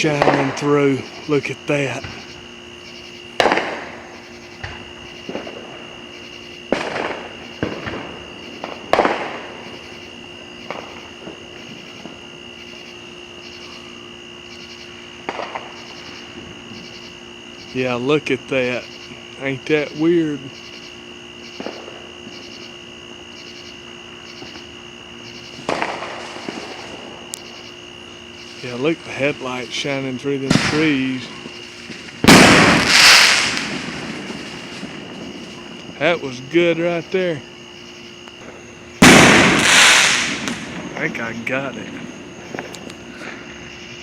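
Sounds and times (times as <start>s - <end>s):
fireworks bangs with echo: 0.0s - 2.3s, 3.4s - 9.9s, 10.6s - 12.3s, 15.2s - 16.6s, 21.5s - 22.5s, 25.5s - 27.3s, 28.5s - 37.0s, 38.4s - 43.5s
insects chirping: 0.0s - 44.0s.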